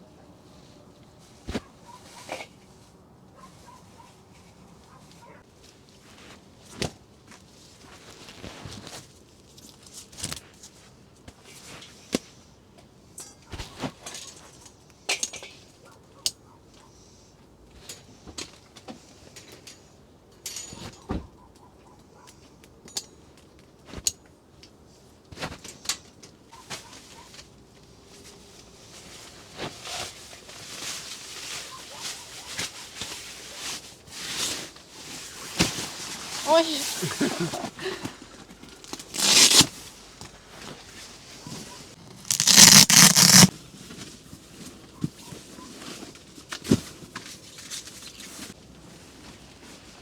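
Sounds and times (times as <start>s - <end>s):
camping gear clicking and clinking: 13.2s - 15.9s, 41.4s - 45.4s
rustling: 26.6s - 50.0s.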